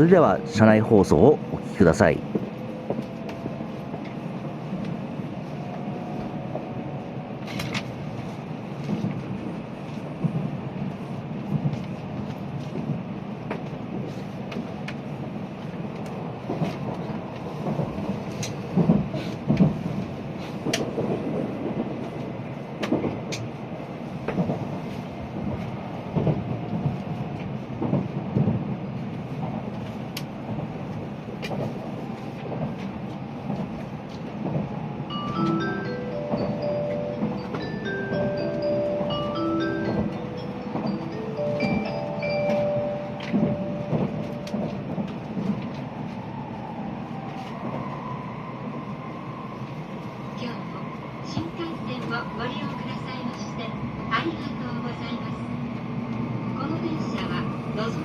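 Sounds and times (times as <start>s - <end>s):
train cabin running noise: 0.0s - 58.0s.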